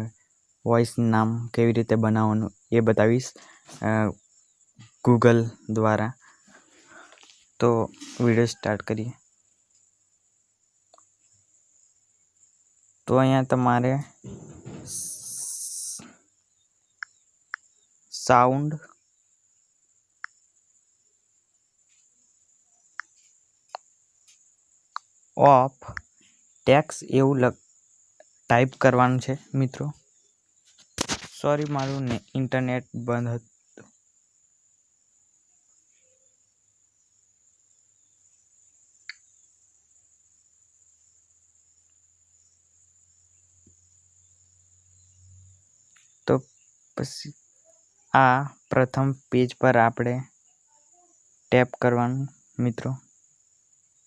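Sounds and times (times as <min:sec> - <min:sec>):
faint high-pitched whine: 0:00.0 - 0:54.0
high-pitched background hiss: 0:00.0 - 0:54.0
sharp click: 0:31.0 - 0:32.2.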